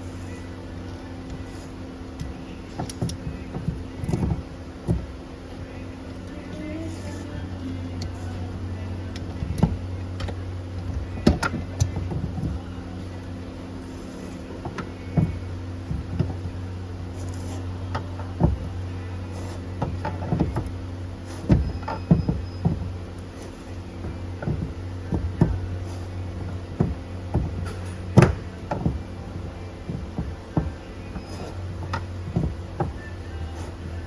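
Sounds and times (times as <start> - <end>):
steady low hum: 0.0 - 34.0.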